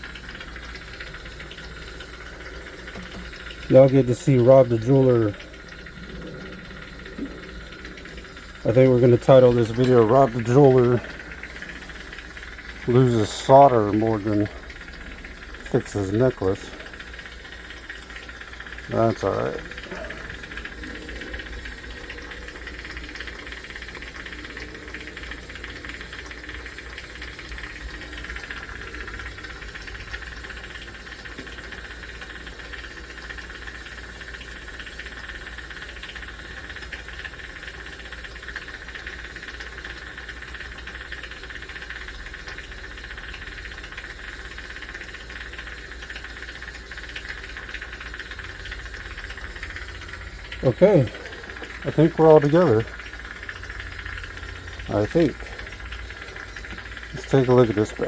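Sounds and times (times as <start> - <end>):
torch flame hissing: 0.0 - 33.1
low hum: 0.0 - 33.6.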